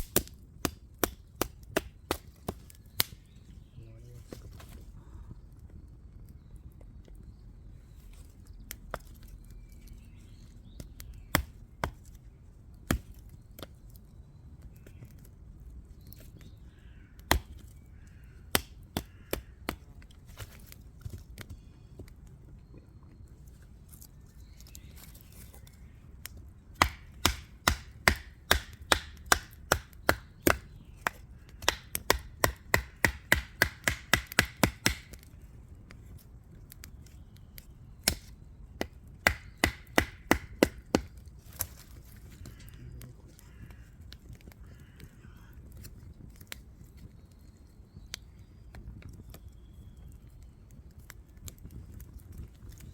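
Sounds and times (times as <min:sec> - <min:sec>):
firewood being chopped: 0:00.0 - 0:03.4, 0:08.4 - 0:14.0, 0:16.0 - 0:22.2, 0:23.9 - 0:42.8, 0:43.4 - 0:44.6, 0:45.7 - 0:47.1, 0:47.9 - 0:52.9.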